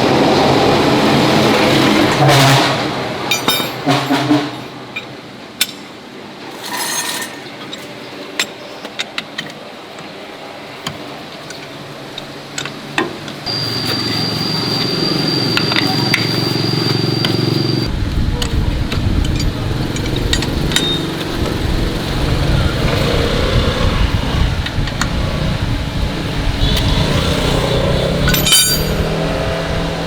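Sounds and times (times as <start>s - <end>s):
metal tools clinking: 3.3s - 4.2s, 6.5s - 8.6s, 28.2s - 29.2s.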